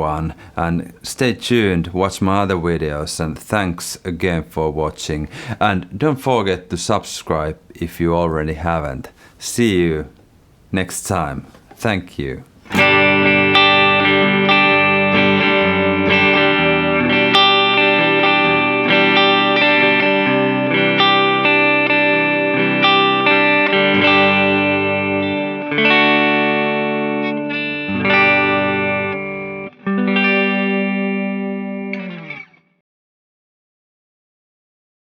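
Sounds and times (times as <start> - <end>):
distorted electric guitar: 12.7 - 32.8.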